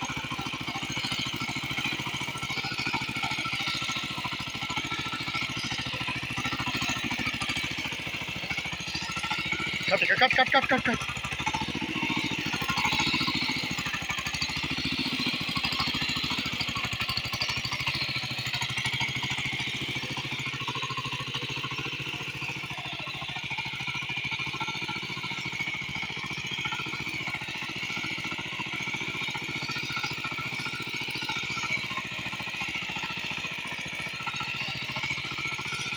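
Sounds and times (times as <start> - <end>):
tractor engine running: 0.0 - 35.9.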